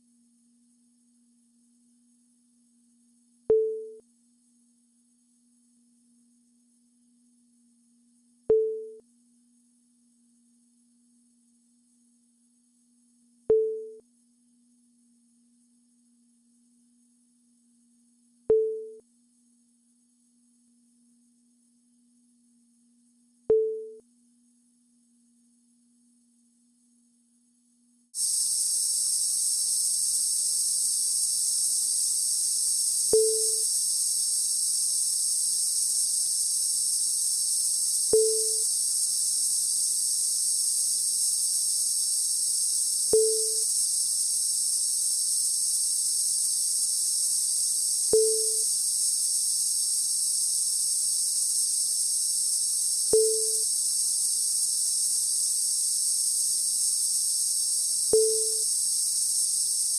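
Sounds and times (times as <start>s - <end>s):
high-pitched electrical buzz: 28.2s - 59.9s.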